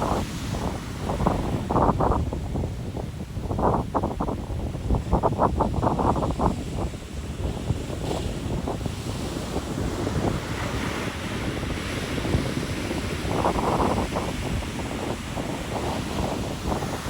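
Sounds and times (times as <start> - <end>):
ocean surf breaking: 0.0 - 2.6, 4.4 - 17.0
wind buffeting microphone: 0.0 - 17.0.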